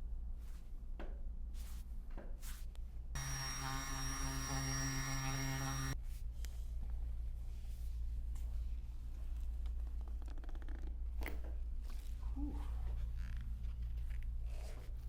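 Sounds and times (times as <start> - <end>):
small electric motor whining: 3.2 - 6.0.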